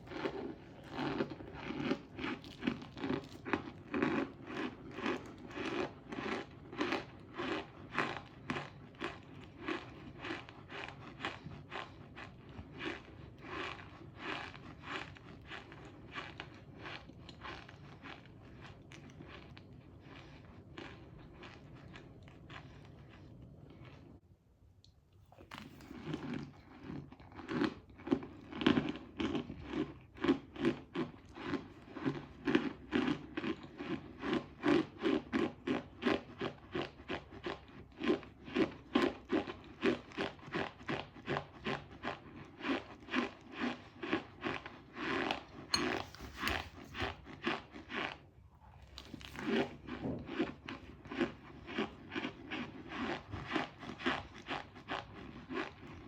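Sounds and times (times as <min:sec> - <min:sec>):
crunchy chewing: 0:00.0 - 0:24.2.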